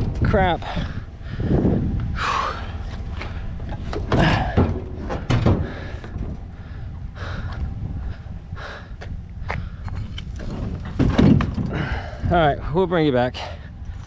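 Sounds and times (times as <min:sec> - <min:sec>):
steady low rumble: 0:00.0 - 0:14.0
heavy scrap metal knocking: 0:03.6 - 0:06.9, 0:10.2 - 0:12.6.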